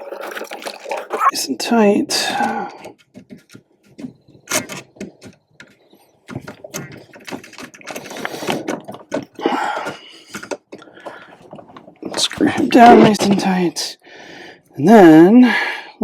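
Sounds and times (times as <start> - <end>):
screwdriver and wiring clicking: 4.5 - 5.8.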